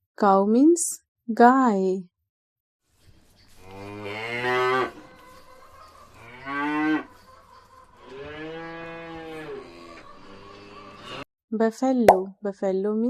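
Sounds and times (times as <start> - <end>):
cow mooing: 3.6 - 5.1, 6.2 - 7.1, 8.0 - 11.2.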